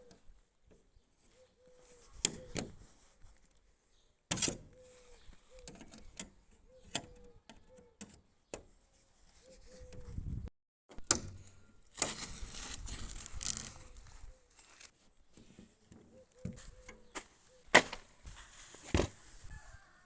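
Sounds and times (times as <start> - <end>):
rustling and scraping: 11.4 - 20.0.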